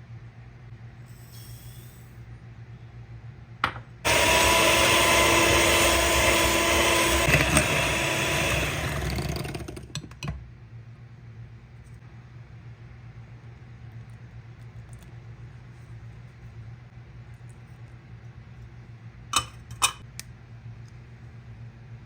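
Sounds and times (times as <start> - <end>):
electric food mixer motor: 4.1 - 10.0
mixer clicks: 4.1 - 10.4.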